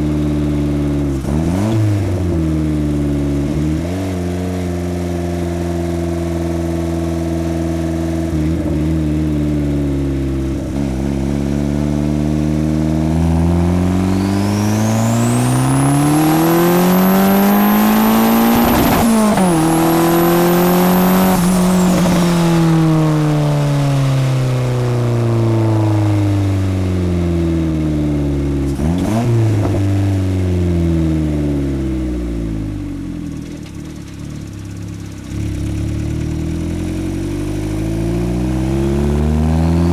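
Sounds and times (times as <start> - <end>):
car engine accelerating hard: 0.0 - 39.9
turbo whistle: 13.9 - 23.8, 39.4 - 39.9.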